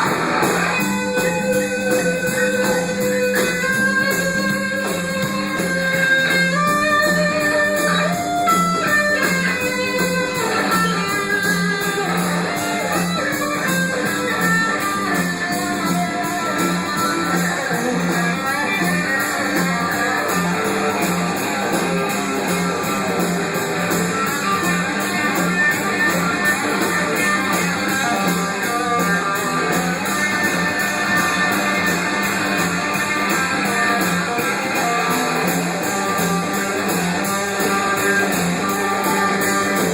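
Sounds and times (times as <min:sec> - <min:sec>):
guitar melody: 0:00.0 - 0:39.9.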